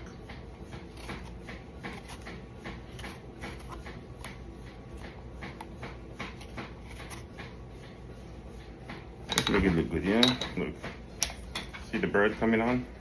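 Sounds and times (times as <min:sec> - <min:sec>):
carving tool scratching melon rind: 0:00.8 - 0:07.4.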